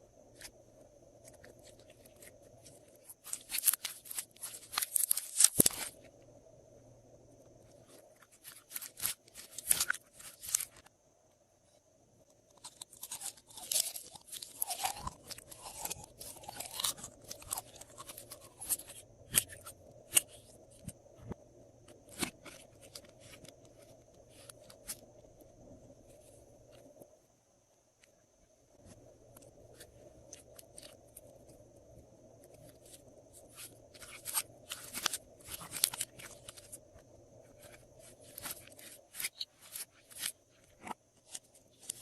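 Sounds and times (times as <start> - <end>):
slime crunching and crackling: 1.9 - 6.0, 8.4 - 10.8, 12.6 - 20.4, 32.8 - 36.8.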